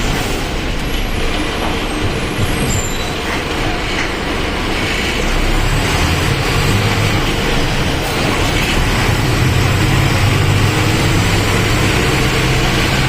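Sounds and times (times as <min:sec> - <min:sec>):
bus diesel engine rumbling: 0:00.0 - 0:13.0
road noise: 0:00.0 - 0:13.0.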